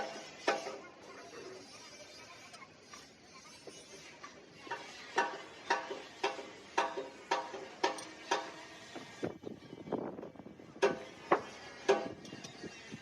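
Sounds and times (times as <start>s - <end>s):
hammer striking metal: 4.7s - 8.6s, 10.8s - 12.2s.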